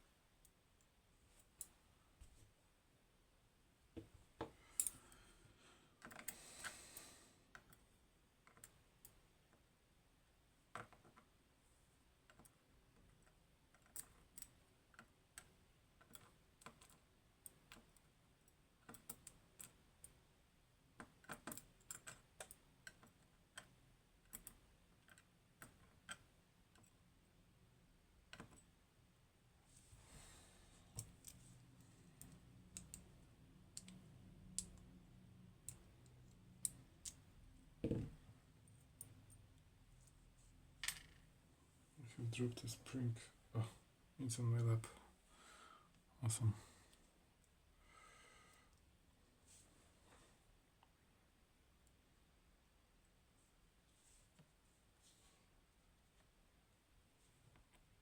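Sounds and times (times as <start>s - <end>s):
small metal parts clicking: 4.8s - 5.0s, 12.3s - 18.0s, 32.1s - 34.9s.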